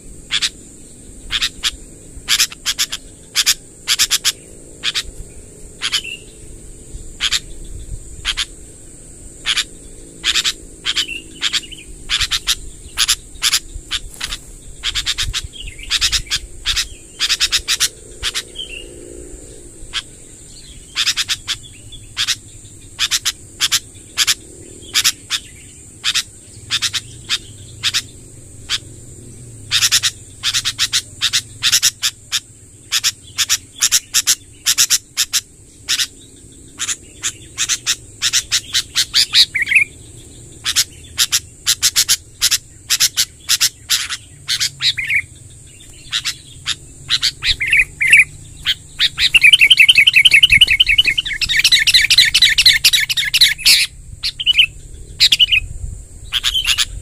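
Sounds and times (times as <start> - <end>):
rapid rolling bird trill: 0.0 - 57.0
bird warbled phrases: 0.2 - 6.4, 7.1 - 7.6, 9.4 - 19.0, 29.6 - 55.6
bird chip notes: 45.8 - 53.8.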